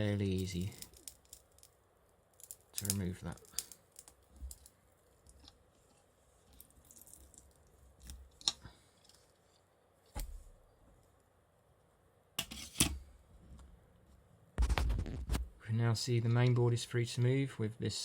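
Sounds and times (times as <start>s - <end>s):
adhesive creaking and crackling: 0.0s - 9.7s.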